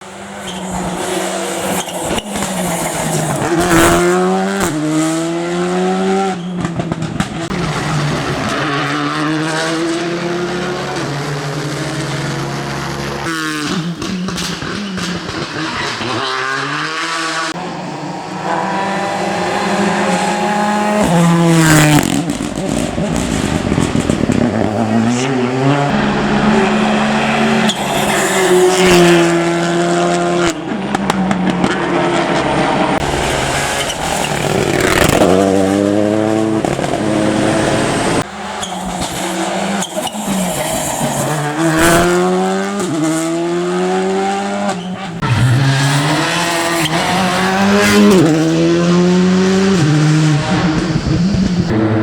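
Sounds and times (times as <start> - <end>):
rally car engines accelerating: 0.0 - 52.0
tyre squeal: 0.2 - 4.0, 24.9 - 29.4, 33.0 - 35.7, 38.3 - 42.3, 44.7 - 48.0.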